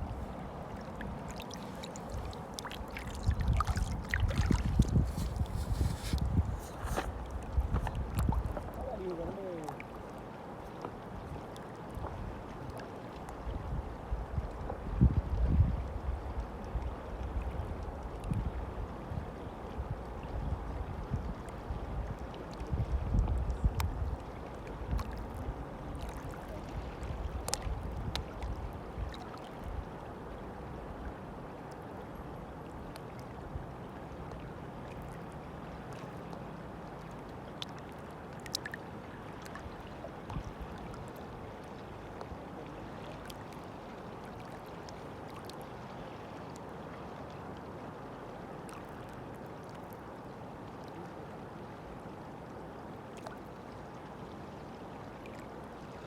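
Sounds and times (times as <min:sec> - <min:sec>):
river water rushing: 0:00.0 - 0:10.8
faint ticks and splashes: 0:00.0 - 0:56.0
wind buffeting microphone: 0:03.2 - 0:09.3, 0:13.5 - 0:24.2.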